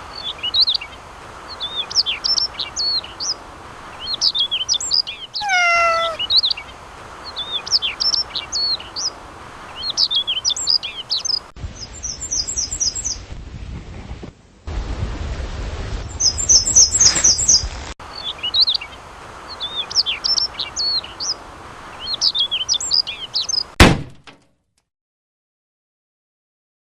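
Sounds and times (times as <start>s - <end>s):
songbird chirping: 0.1s - 13.2s, 16.2s - 23.8s
steady hiss: 16.9s - 23.3s.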